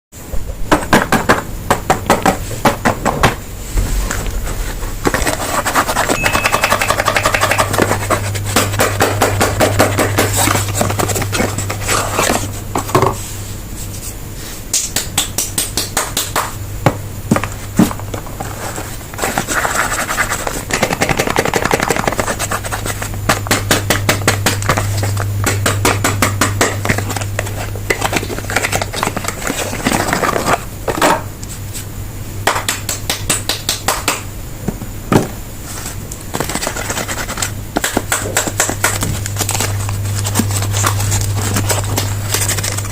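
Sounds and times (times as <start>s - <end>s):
low steady hum: 0.2s - 42.9s.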